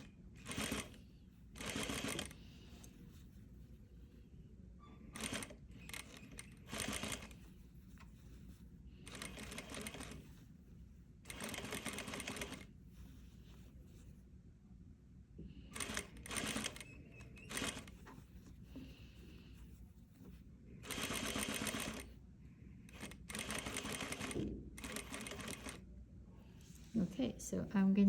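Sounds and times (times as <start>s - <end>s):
sewing machine stitching: 0.0s - 1.0s, 1.6s - 2.4s, 5.1s - 7.4s, 9.1s - 10.3s, 11.3s - 12.7s, 15.7s - 18.0s, 20.8s - 22.1s, 22.9s - 25.8s.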